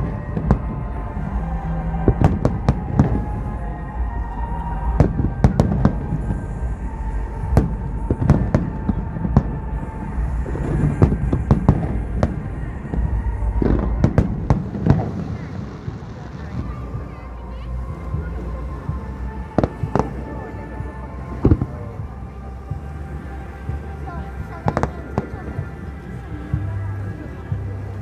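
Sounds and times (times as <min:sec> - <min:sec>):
fireworks bursting bangs: 0:00.0 - 0:17.2
steady rumble: 0:00.0 - 0:28.0.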